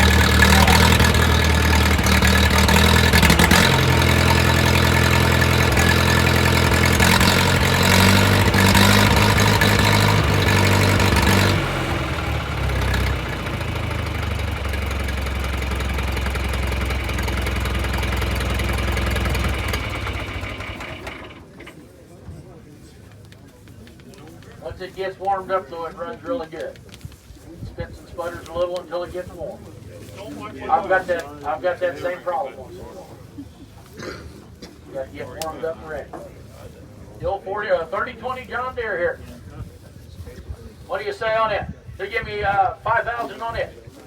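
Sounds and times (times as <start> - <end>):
tractor engine running: 0.0 - 21.8.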